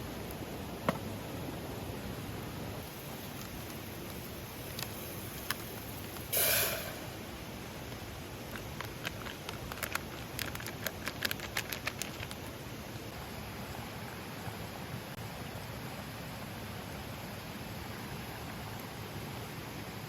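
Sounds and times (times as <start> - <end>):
wood fire crackling: 0.0 - 13.1
loud hiss: 2.8 - 8.2.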